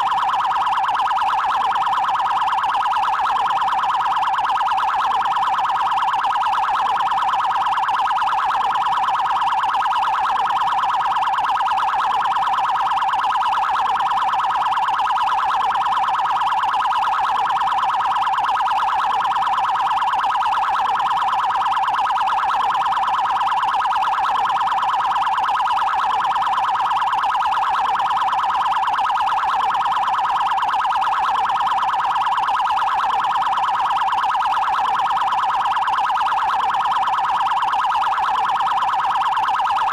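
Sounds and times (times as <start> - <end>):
electronic siren warbling: 0.0 - 39.9.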